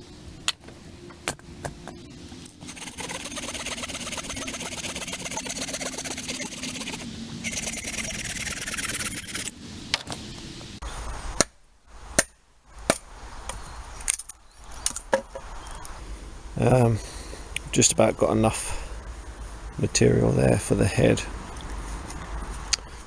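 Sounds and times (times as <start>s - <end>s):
saw cutting wood: 2.4s - 9.5s
sharp knocks splitting wood: 11.4s - 11.6s, 12.2s - 15.4s.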